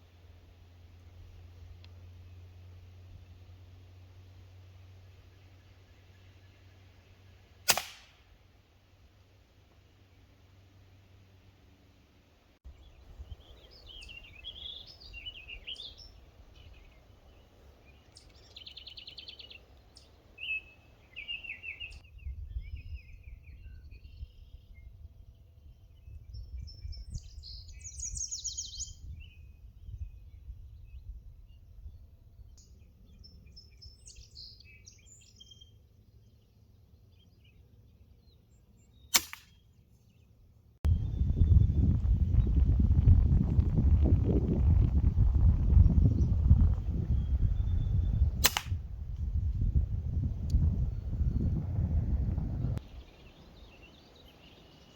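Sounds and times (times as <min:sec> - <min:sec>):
songbirds chirping and trilling: 0:00.2 - 0:07.6, 0:12.7 - 0:42.8, 0:44.7 - 0:54.9
pellet rifle shot: 0:07.6 - 0:08.4, 0:39.1 - 0:39.6, 0:48.4 - 0:48.9
low rumble: 0:40.9 - 0:52.8.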